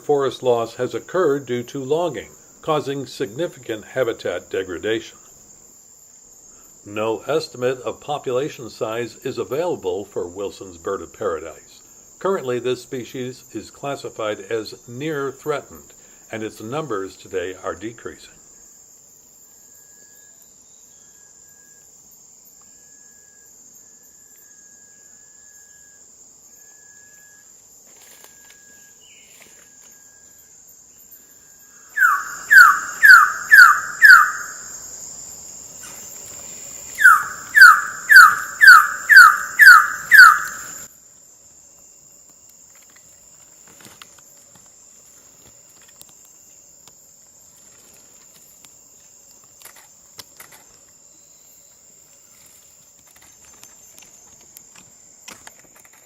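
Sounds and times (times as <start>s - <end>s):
high insect drone: 0.0s - 56.0s
bird calling down-slurred notes: 31.9s - 34.8s, 36.9s - 40.9s.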